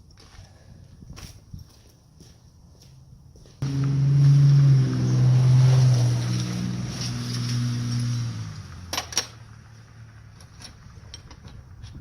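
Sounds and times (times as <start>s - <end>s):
vehicle engine humming: 3.6s - 12.0s.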